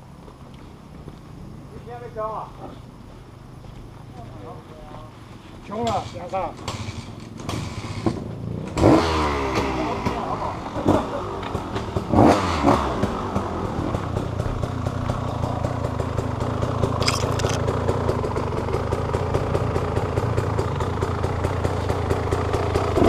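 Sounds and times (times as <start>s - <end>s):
motorcycle engine running: 6.6s - 23.0s
sharp click: 17.0s - 17.6s.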